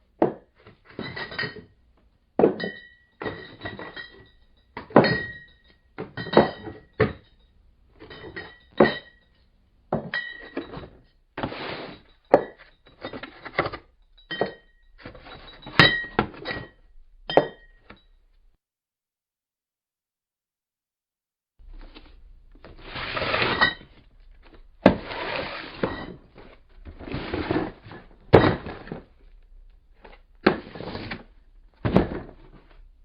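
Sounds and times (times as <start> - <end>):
glass bottles clinking: 1.0 - 1.7, 2.4 - 7.3, 10.0 - 10.9, 12.1 - 17.9, 25.0 - 26.4.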